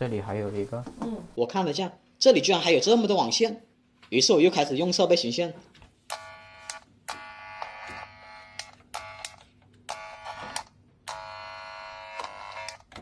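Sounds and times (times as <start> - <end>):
cable tracer probe buzzing: 6.1 - 12.8.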